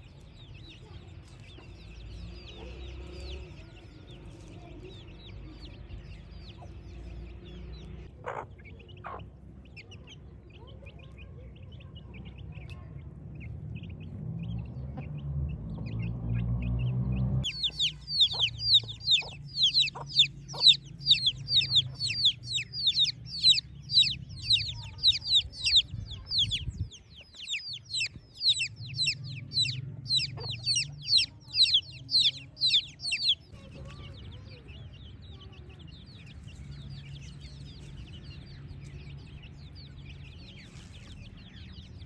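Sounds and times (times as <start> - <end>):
chicks peeping: 0.0 - 42.0
low rumbling noise: 12.2 - 33.4.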